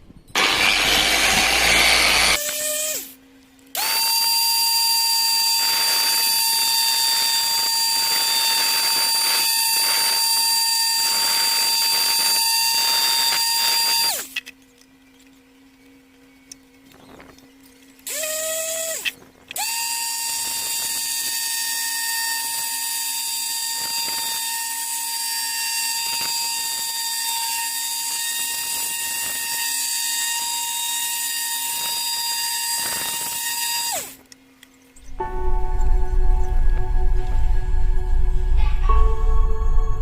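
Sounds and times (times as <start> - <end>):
power tool motor whining: 0.3 - 14.5, 18.0 - 34.3.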